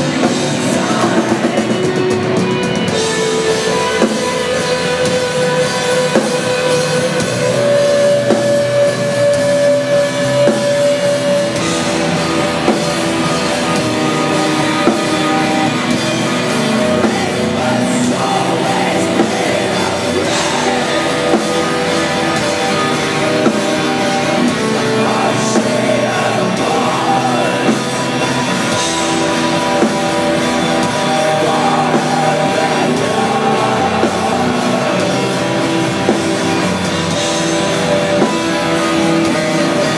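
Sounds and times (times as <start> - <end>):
distorted electric guitars: 0.0 - 39.9
drums: 0.0 - 39.9
person singing: 0.0 - 39.9.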